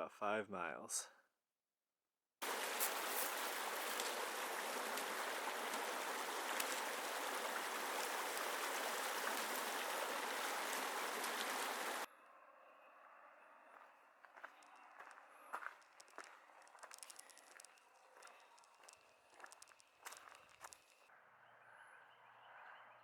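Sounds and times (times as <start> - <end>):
flowing water rushing: 2.4 - 12.1.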